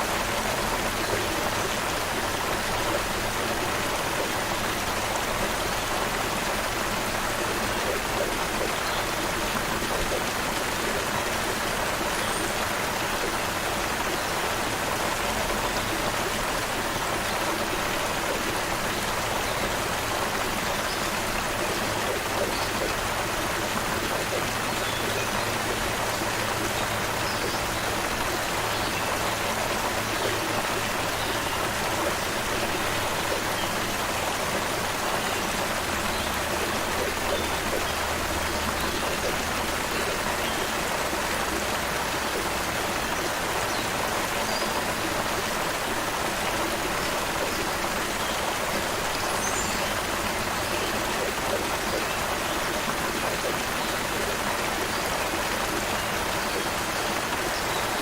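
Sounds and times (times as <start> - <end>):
creek water flowing: 0.0 - 58.0.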